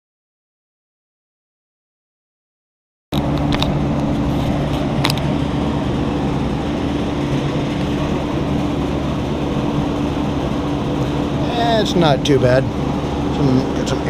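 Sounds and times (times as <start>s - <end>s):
car engine idling: 3.2s - 14.0s.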